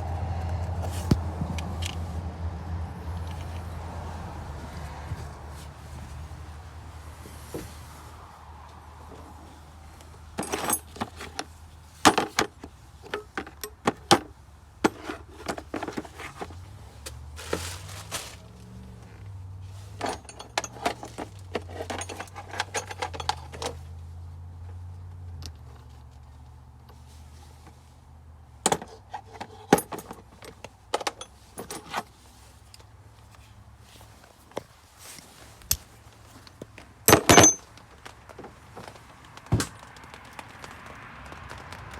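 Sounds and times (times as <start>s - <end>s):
metal hand tools clinking: 37.1s - 37.7s.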